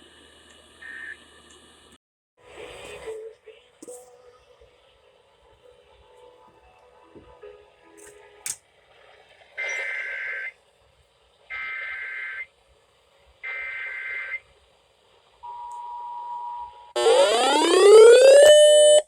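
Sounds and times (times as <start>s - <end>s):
two-tone attention signal: 17.0s - 19.0s.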